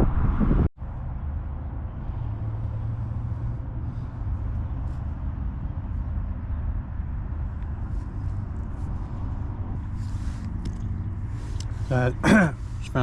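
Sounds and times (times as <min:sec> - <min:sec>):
distant engines rumbling: 0:00.0 - 0:13.0.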